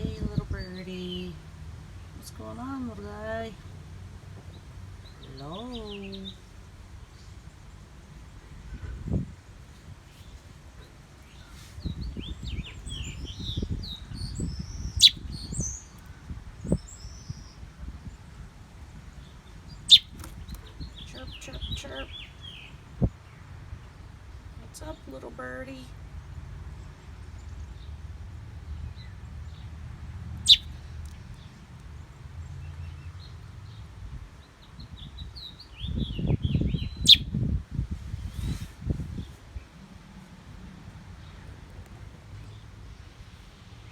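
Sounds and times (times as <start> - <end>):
small bird chirping: 11.2 - 17.6, 19.2 - 23.1, 30.4 - 31.5, 34.5 - 37.4.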